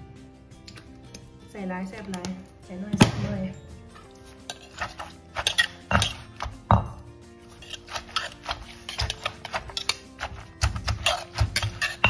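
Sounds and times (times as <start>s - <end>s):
background music: 0.0s - 12.0s
pestle knocking in mortar: 4.6s - 7.0s, 7.9s - 12.0s.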